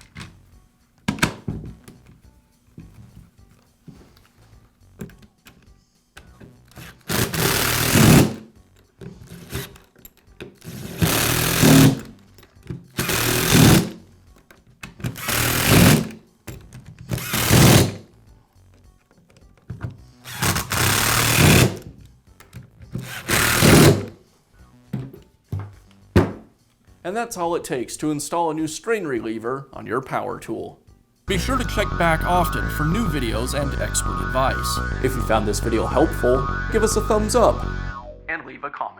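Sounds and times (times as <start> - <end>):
power drill driving screws: 6.8 - 8.4, 9.4 - 9.8, 10.7 - 12.1, 13.0 - 14.0, 15.1 - 16.2, 17.2 - 18.0, 20.2 - 21.8, 23.0 - 24.1.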